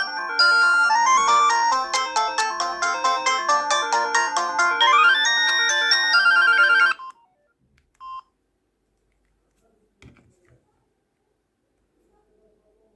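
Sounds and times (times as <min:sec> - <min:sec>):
phone ringtone melody: 0:00.0 - 0:07.3.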